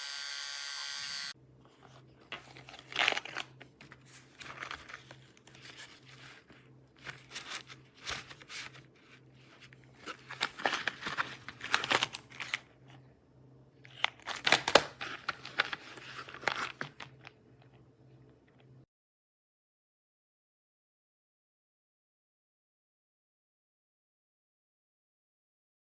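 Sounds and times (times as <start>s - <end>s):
crinkling and rustling: 1.6s - 13.1s, 13.8s - 18.8s.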